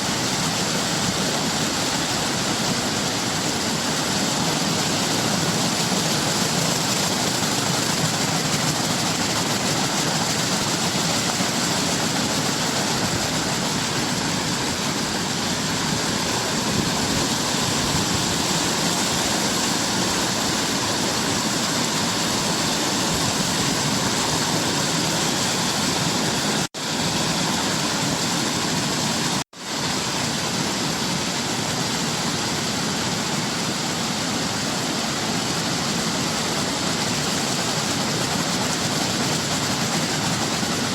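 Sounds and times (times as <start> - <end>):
waterfall rushing: 0.0 - 40.9.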